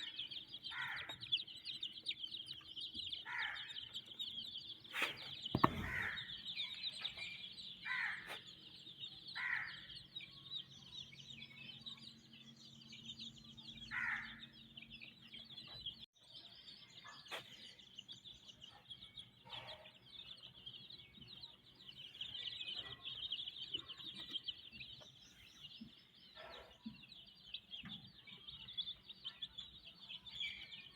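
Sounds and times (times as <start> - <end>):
chicks peeping: 0.0 - 30.9
thump: 5.5 - 6.2.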